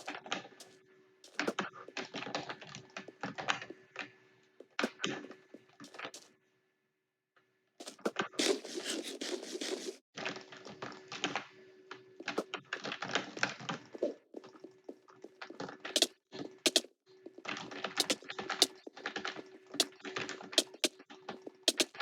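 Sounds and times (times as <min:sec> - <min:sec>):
computer keyboard typing: 0:16.7 - 0:16.9, 0:18.0 - 0:18.7, 0:20.6 - 0:20.9, 0:21.7 - 0:21.9.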